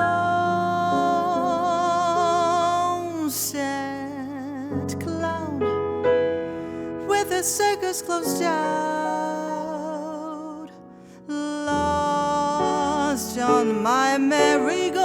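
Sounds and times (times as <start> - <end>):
piano chords: 0.0 - 15.0
singer breathing: 6.4 - 7.1, 10.9 - 11.3.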